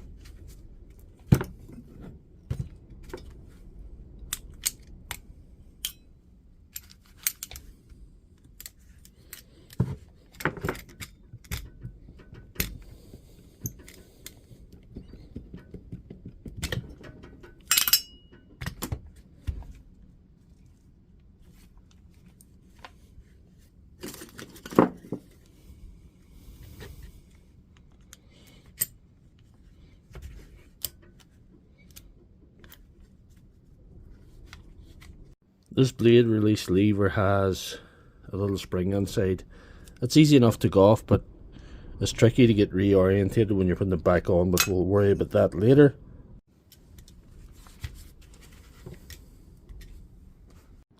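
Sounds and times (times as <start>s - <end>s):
metal tools clicking and clinking: 13.6s - 14.4s, 16.6s - 18.7s.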